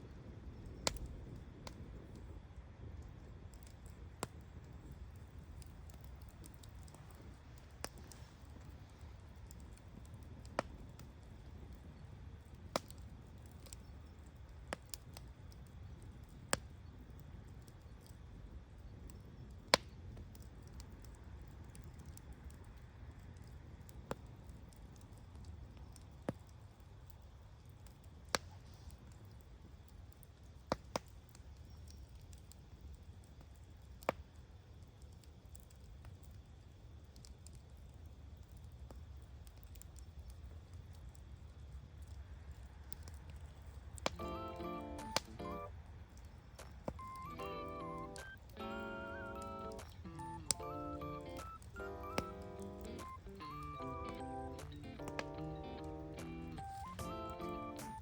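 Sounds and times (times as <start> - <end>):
bonfire rumble: 0.0 - 58.0
fire crackling pops: 0.0 - 58.0.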